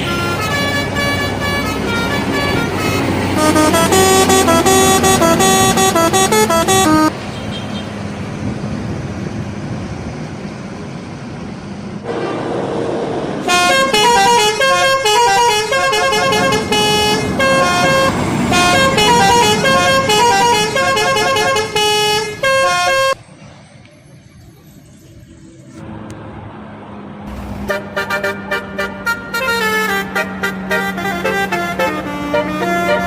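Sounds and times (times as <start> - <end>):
musical air horn melody: 0.0 - 7.1, 13.4 - 23.2, 27.6 - 33.0
passing vehicle noise: 0.0 - 33.0.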